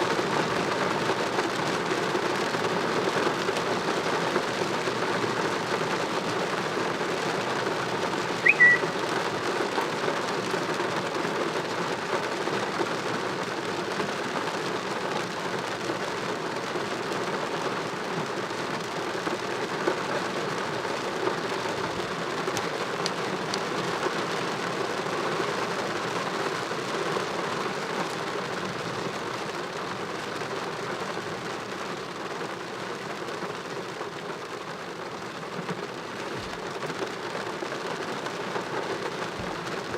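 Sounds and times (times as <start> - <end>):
heavy rain: 0.0 - 39.9
short high chirp: 8.4 - 8.9.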